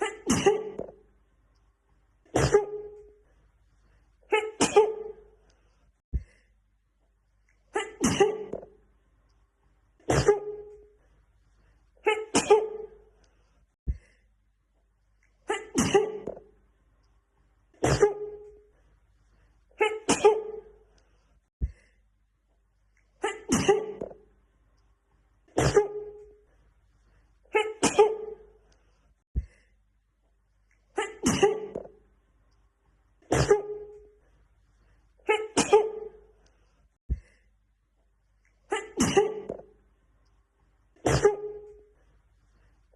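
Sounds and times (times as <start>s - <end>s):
woman sneezing: 0.0s - 0.9s, 2.3s - 3.1s, 4.3s - 5.3s, 7.7s - 8.7s, 10.0s - 10.8s, 12.0s - 13.0s, 15.5s - 16.4s, 17.8s - 18.4s, 19.8s - 20.7s, 23.2s - 24.1s, 25.6s - 26.2s, 27.5s - 28.4s, 31.0s - 31.9s, 33.2s - 33.9s, 35.2s - 36.2s, 38.7s - 39.6s, 41.0s - 41.8s.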